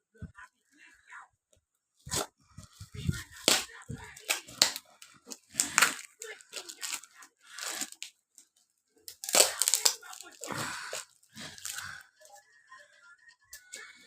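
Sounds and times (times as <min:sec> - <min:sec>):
plastic packaging crinkling: 0:02.1 - 0:12.0.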